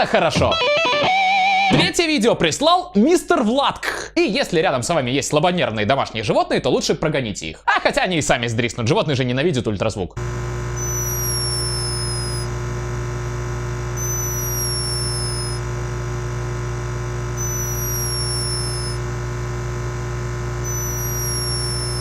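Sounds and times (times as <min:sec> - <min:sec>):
hummingbird snoring whistles: 0:10.8 - 0:12.5, 0:14.0 - 0:15.6, 0:17.4 - 0:19.0, 0:20.6 - 0:22.0.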